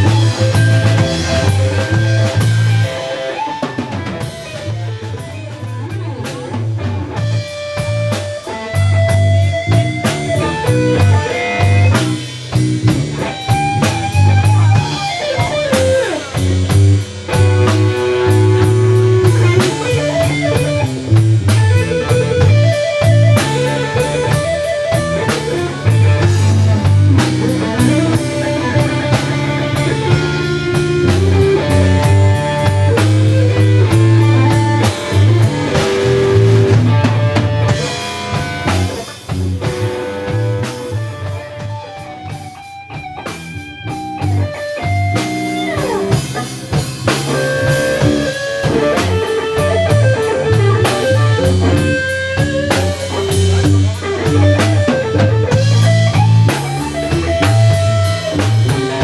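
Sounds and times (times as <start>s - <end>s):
blues rock band playing: 0.0s - 59.0s
electric guitar: 0.0s - 59.0s.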